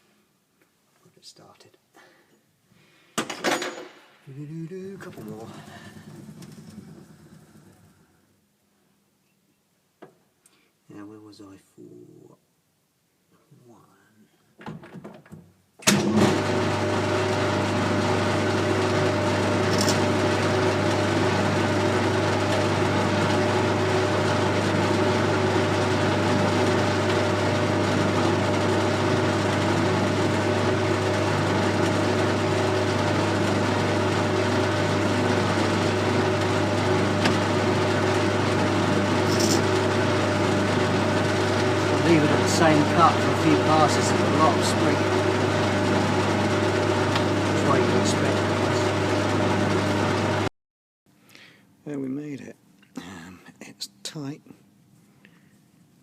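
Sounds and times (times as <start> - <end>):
lathe humming: 4.5 - 8.1, 15.9 - 50.5.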